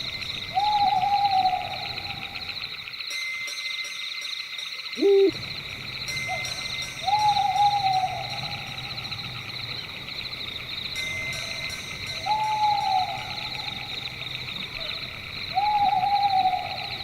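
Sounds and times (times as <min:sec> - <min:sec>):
night insects chorus: 0:00.0 - 0:17.0
owl hooting: 0:00.5 - 0:02.6, 0:05.0 - 0:05.4, 0:07.0 - 0:09.0, 0:12.3 - 0:14.2, 0:14.8 - 0:17.0.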